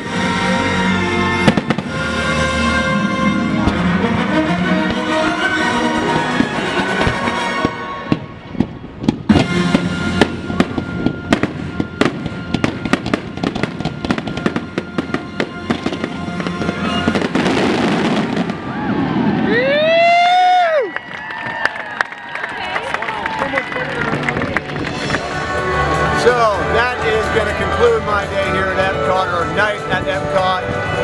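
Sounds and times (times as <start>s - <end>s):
orchestral music: 0.0s - 18.8s, 22.9s - 31.0s
fireworks bangs and crackles: 1.3s - 2.7s, 3.6s - 19.6s, 24.0s - 31.0s.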